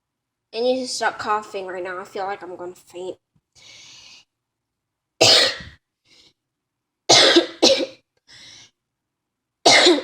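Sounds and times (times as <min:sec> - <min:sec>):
person coughing: 0:05.2 - 0:05.8, 0:07.1 - 0:08.0, 0:09.7 - 0:10.0.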